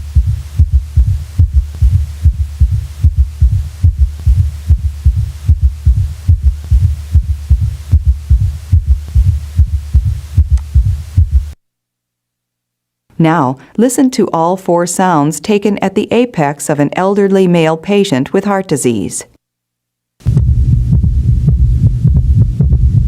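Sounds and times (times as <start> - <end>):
heartbeat thuds: 0.0 - 11.6, 20.2 - 23.0
steady low hum: 0.0 - 13.9, 19.6 - 23.0.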